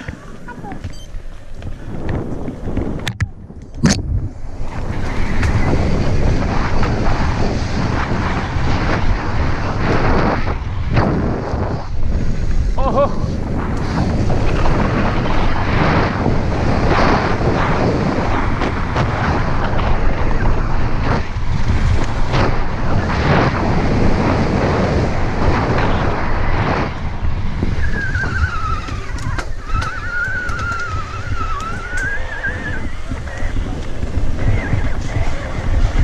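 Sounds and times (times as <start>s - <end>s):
wind buffeting microphone: 0.0s - 36.0s
high wavering squeal: 27.7s - 33.2s.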